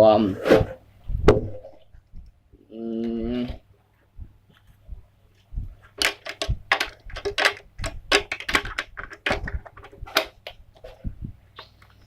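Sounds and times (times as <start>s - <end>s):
hard plastic clicks and clacks: 6.0s - 10.6s.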